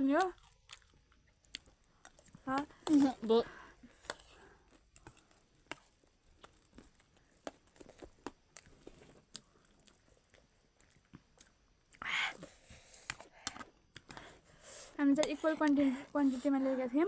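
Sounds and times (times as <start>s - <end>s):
chewing and crunching snack: 0.0s - 16.6s
breathy hiss: 12.0s - 13.4s, 14.2s - 16.9s.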